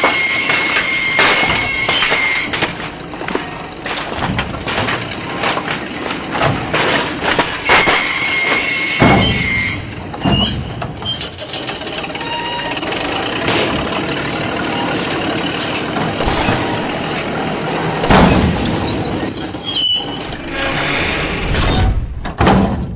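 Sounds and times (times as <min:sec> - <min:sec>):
high steady squeal: 0:00.0 - 0:13.2.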